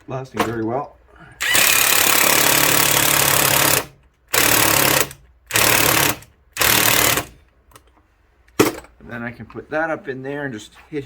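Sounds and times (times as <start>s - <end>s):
power driver driving a screw: 1.4s - 7.3s.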